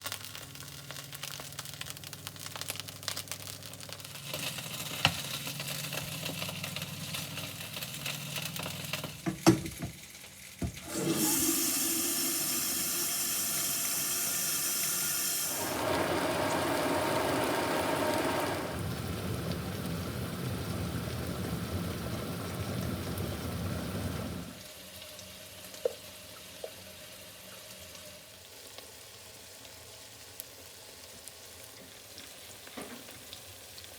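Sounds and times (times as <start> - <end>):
kitchen tap running water: 4.2 - 24.7
kitchen handling knocks and clicks: 9.2 - 10.0.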